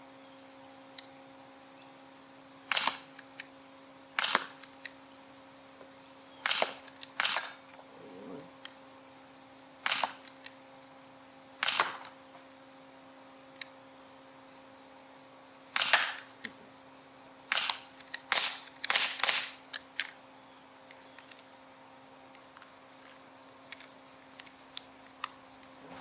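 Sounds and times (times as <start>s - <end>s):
air pistol pops: 2.7s - 3.3s, 4.2s - 4.8s, 6.4s - 7.4s, 9.9s - 10.4s, 15.8s - 16.6s, 17.5s - 19.6s.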